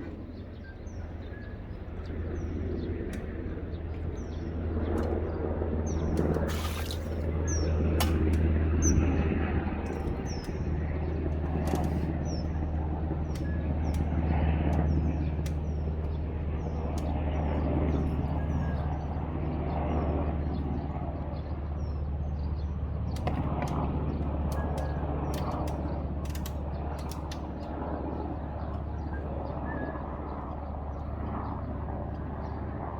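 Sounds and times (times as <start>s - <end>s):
small bird chirping: 0.0s - 7.8s
steady low hum: 0.0s - 32.9s.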